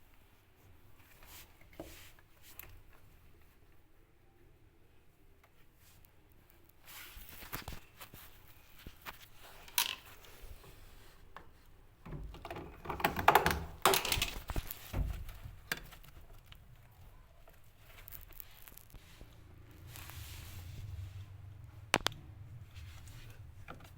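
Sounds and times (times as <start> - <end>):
objects being handled: 5.4 - 20.9.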